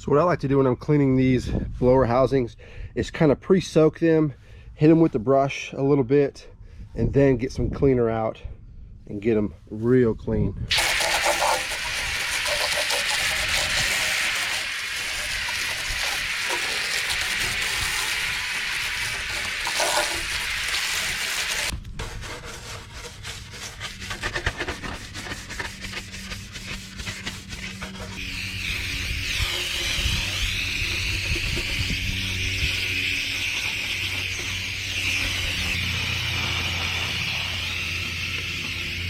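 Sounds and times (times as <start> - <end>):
spraying hiss: 10.7 - 21.7, 28.2 - 39.0
brush scrubbing: 10.7 - 38.8.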